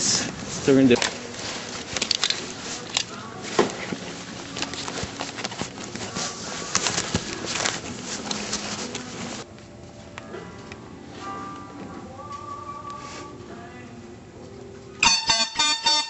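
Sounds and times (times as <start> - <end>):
rustling: 0.0 - 13.8.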